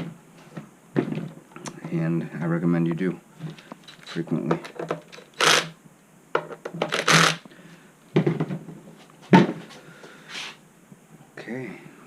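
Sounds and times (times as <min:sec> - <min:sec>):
rustling and scraping: 0:03.4 - 0:05.6, 0:08.2 - 0:10.6.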